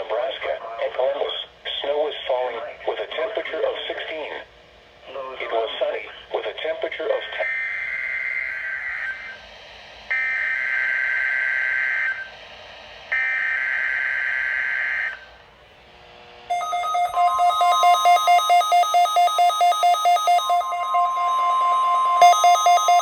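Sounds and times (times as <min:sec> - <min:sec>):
buzzy data bursts: 0:16.5 - 0:23.0
rapid pulsing beep: 0:16.5 - 0:23.0
steady high alarm tone: 0:16.5 - 0:23.0.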